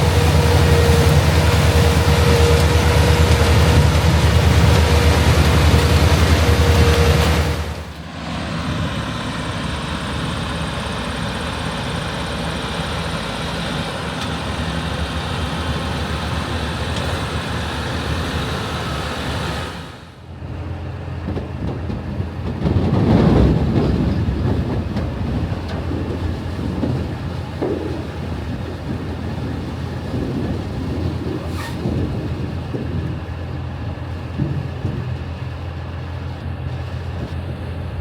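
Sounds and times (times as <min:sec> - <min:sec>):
different machine running: 0:00.0 - 0:20.0
heavy harvesting machinery running: 0:00.0 - 0:38.0.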